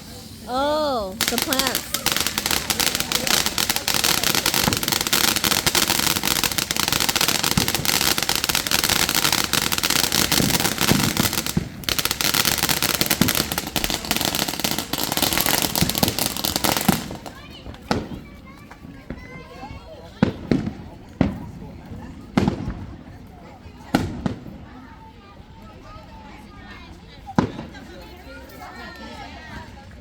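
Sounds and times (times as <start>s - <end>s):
fireworks crackling: 0.0s - 23.0s.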